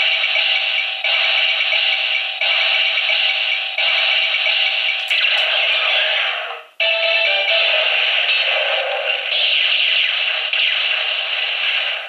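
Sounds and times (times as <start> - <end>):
toy electronic music: 6.8 - 9.6.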